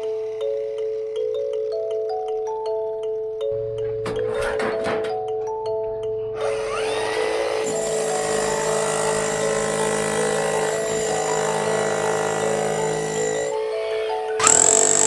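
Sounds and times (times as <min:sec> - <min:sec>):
power tool whining: 0:06.3 - 0:15.0.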